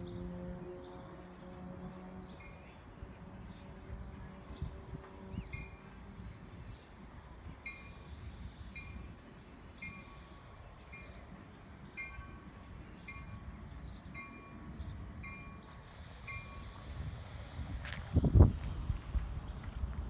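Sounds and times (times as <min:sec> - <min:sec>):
crossing warning bell ringing: 0:07.2 - 0:16.9.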